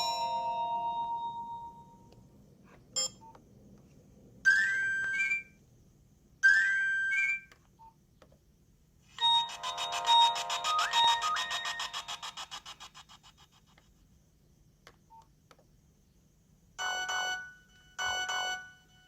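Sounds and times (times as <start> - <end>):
phone ringtone melody: 0.0 - 2.0, 9.2 - 12.7, 16.8 - 19.0.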